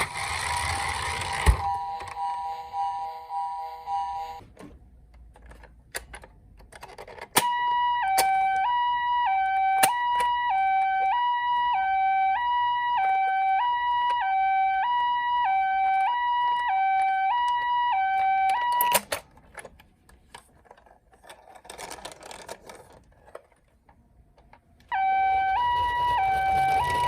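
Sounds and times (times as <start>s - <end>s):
toy two-tone siren: 0.0s - 4.4s, 7.4s - 19.1s, 24.9s - 27.0s.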